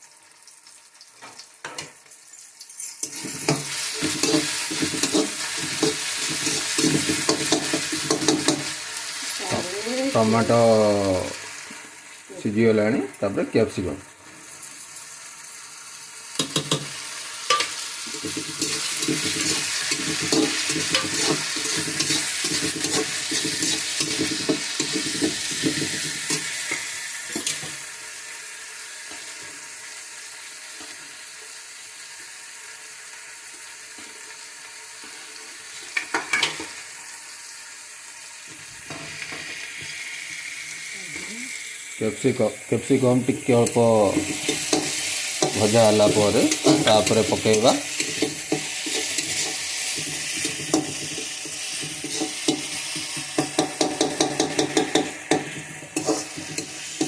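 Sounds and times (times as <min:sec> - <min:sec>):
vegetables sizzling in hot oil: 0:00.0 - 0:57.0
spatula scraping and knocking pan: 0:03.1 - 0:08.8, 0:16.4 - 0:16.9, 0:17.5 - 0:27.7, 0:44.1 - 0:57.0.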